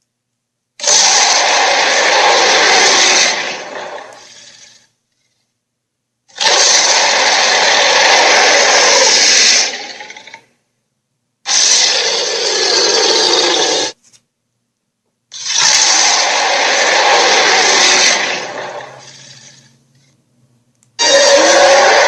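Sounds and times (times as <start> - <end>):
dinosaur roaring: 0.8 - 4.9, 6.4 - 10.4, 11.5 - 14.0, 15.4 - 19.7, 21.0 - 22.0.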